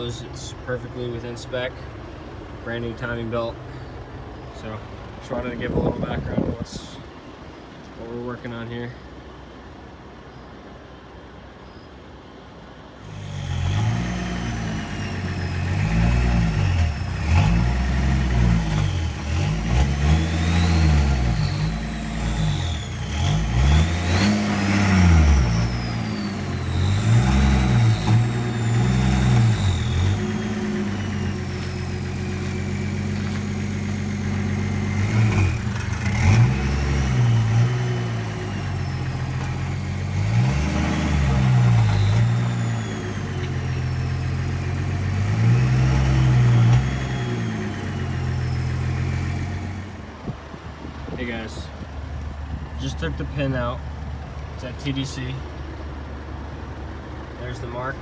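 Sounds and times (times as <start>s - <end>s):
diesel engine revving: 12.9s - 58.0s.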